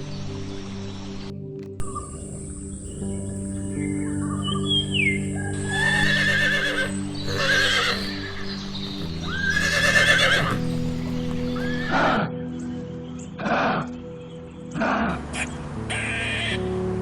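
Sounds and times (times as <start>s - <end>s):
background music: 0.0s - 17.0s
horse whinnying: 5.5s - 12.2s.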